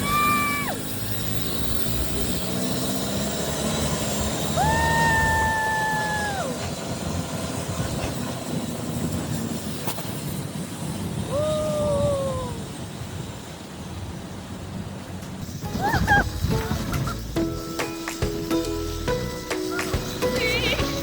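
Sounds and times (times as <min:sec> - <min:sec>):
boat engine running: 0:14.4 - 0:21.0
high falling tone: 0:15.4 - 0:21.0.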